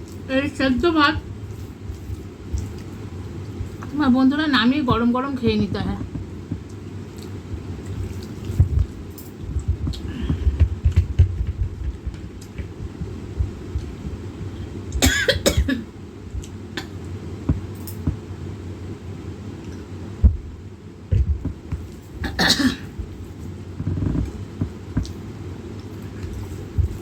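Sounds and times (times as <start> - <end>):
person eating: 1.5 - 3.9, 6.5 - 11.2
person coughing: 15.0 - 15.9, 22.2 - 22.9.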